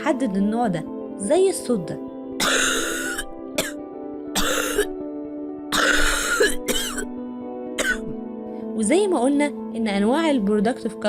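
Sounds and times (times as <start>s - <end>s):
background music: 0.0s - 11.0s
person coughing chesty cough: 2.4s - 5.0s, 5.7s - 7.1s, 7.8s - 8.2s.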